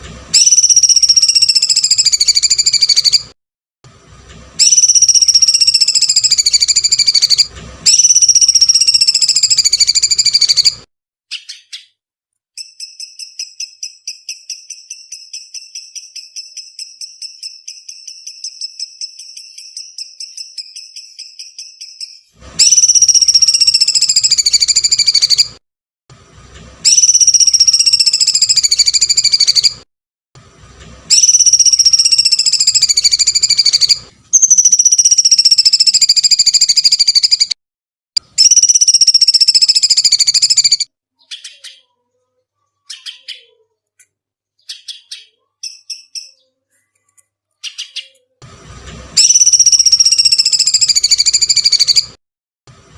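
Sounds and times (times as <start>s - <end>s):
long shrill bird calls: 0.4s - 3.3s, 4.6s - 12.0s, 12.6s - 25.6s, 26.8s - 29.8s, 31.1s - 37.6s, 38.3s - 42.0s, 44.6s - 46.6s, 49.2s - 52.1s
short bird chirps: 0.4s - 3.4s, 4.6s - 25.6s, 31.1s - 37.6s, 38.2s - 48.4s, 49.2s - 52.2s
bird trill of high notes: 4.6s - 12.0s, 49.2s - 52.1s.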